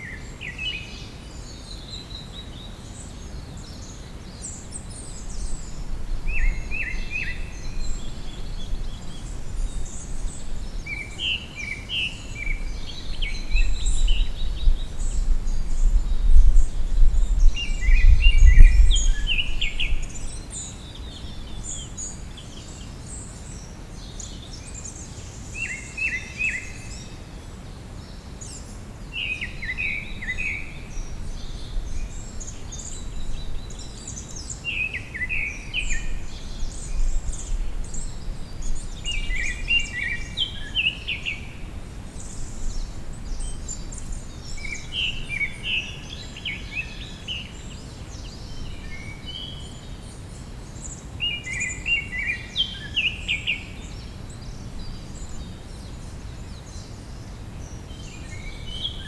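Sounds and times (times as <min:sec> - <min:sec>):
songbirds chirping and singing: 0:00.1 - 0:27.2.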